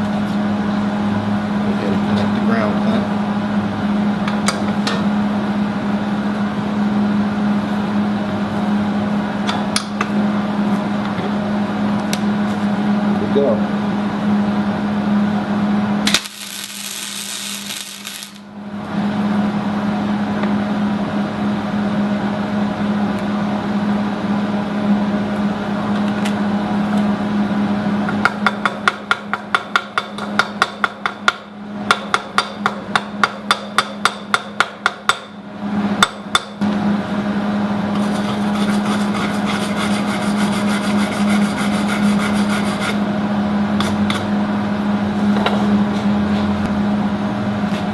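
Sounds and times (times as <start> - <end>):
welding arc crackling pops: 16.0 - 18.5
welder humming: 16.0 - 18.6
welder hiss: 16.1 - 18.4.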